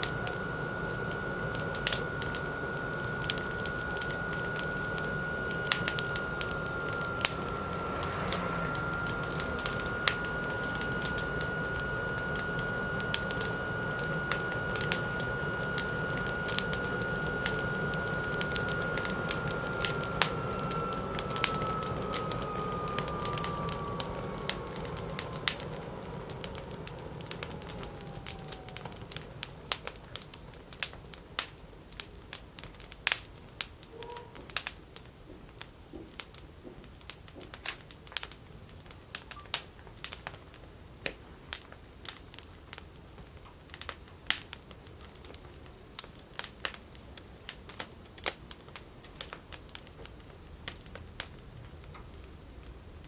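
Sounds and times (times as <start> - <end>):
faint whine sliding down: 0.0 - 33.2
wood fire crackling and popping: 0.0 - 53.0.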